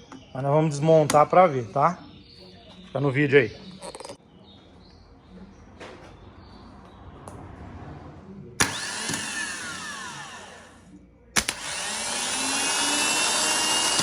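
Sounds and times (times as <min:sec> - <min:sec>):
starter motor click: 0:08.6 - 0:10.5, 0:11.4 - 0:14.0
starter motor whine: 0:08.6 - 0:10.8, 0:11.4 - 0:14.0.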